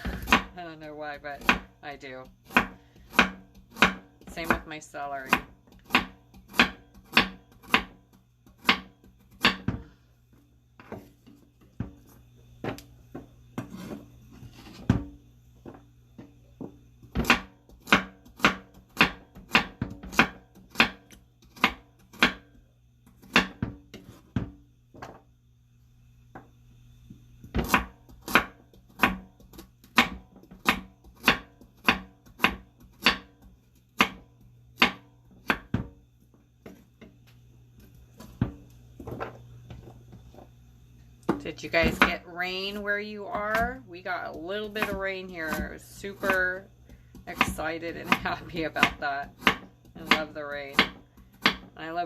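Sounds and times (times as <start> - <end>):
knife chopping vegetables on board: 0.0 - 0.6, 1.3 - 9.9, 16.6 - 25.2, 27.5 - 36.0, 41.3 - 42.2, 43.3 - 51.9.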